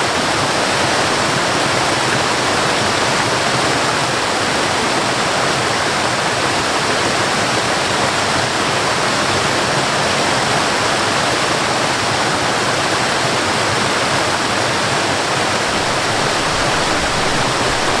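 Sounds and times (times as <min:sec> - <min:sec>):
waterfall roaring: 0:00.0 - 0:18.0.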